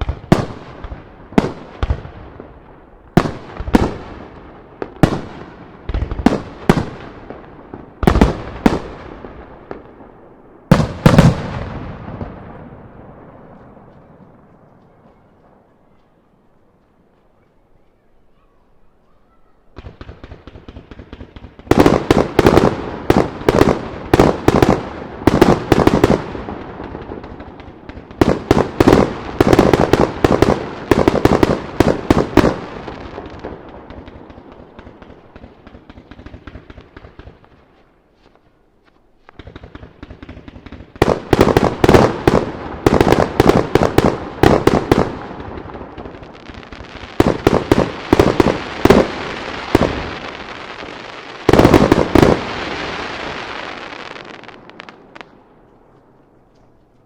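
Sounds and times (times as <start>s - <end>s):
rapid firework pops: 39.3s - 50.6s, 51.4s - 52.5s.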